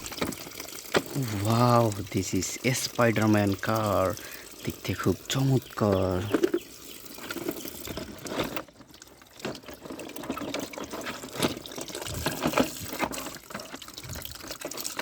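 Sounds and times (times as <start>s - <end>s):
water dripping: 0.0s - 8.0s
water running and splashing: 0.0s - 15.0s.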